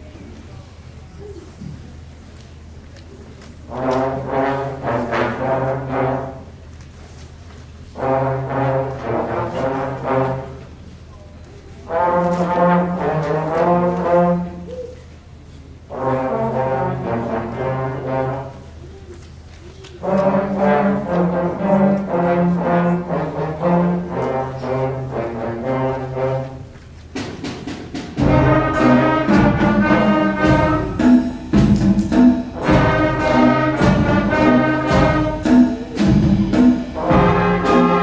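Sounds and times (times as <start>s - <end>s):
band playing blues with brass: 3.7s - 6.5s, 11.9s - 14.7s, 20.0s - 26.8s, 27.9s - 38.0s.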